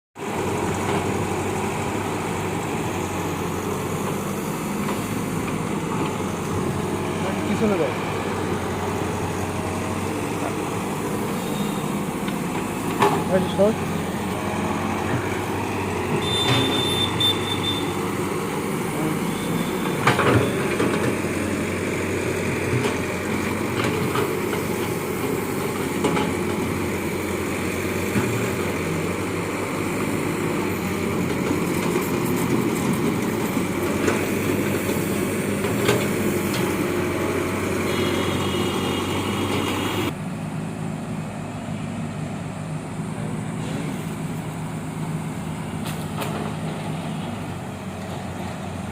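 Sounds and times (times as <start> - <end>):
excavator diesel engine running: 0.2 - 48.9
brief high whine or beep: 11.3 - 12.0.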